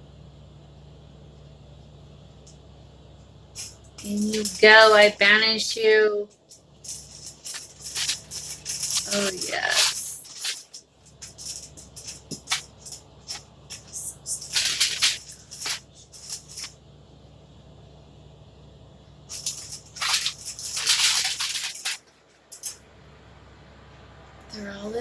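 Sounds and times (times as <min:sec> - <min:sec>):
low steady hum: 0:00.0 - 0:25.0
rustling and crinkling: 0:03.5 - 0:16.8, 0:19.3 - 0:22.9.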